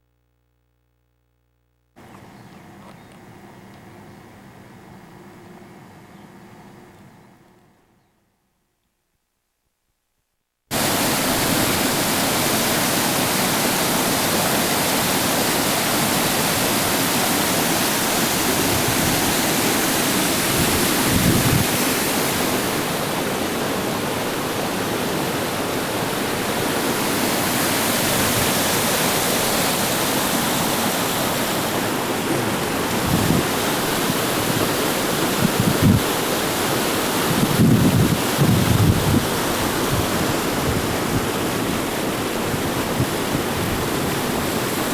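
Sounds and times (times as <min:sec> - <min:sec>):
waterfall rushing: 0:10.7 - 0:44.9
wind buffeting microphone: 0:20.4 - 0:23.0, 0:32.3 - 0:36.6, 0:37.2 - 0:44.8.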